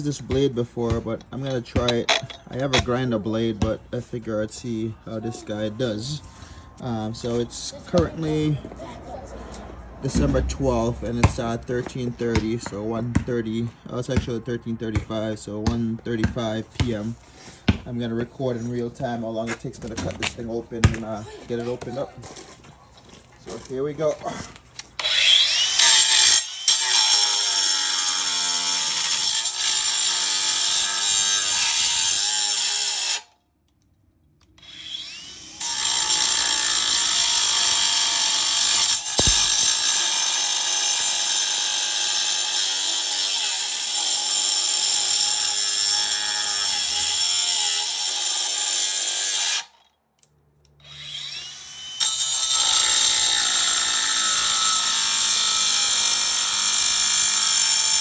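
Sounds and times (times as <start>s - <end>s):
angle grinder cutting metal: 25.0s - 33.3s, 34.6s - 49.8s, 50.8s - 58.0s.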